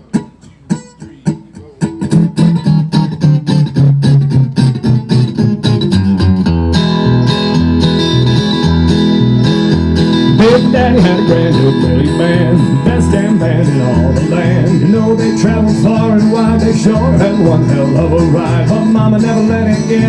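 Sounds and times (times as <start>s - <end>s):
bluegrass band playing: 0.0s - 20.0s
plucked guitar notes: 0.0s - 20.0s.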